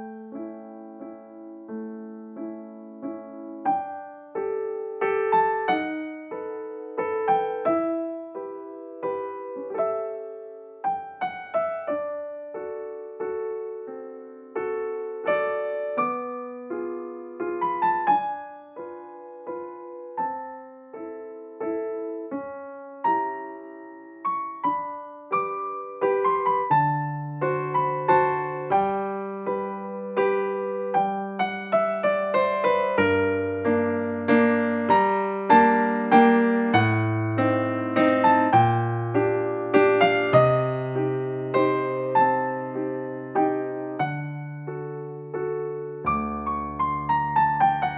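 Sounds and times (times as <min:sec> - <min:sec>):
gentle piano melody: 0:00.0 - 0:47.9.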